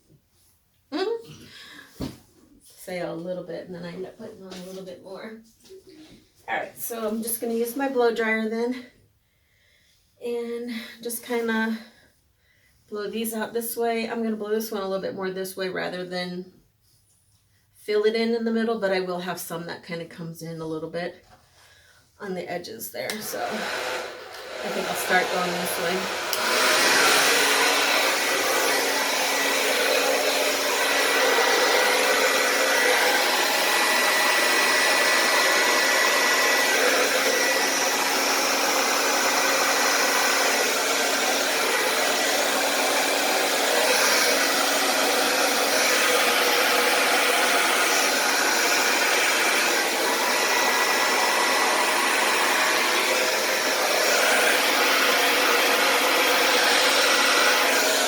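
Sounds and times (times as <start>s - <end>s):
blow dryer running: 23.0s - 58.0s.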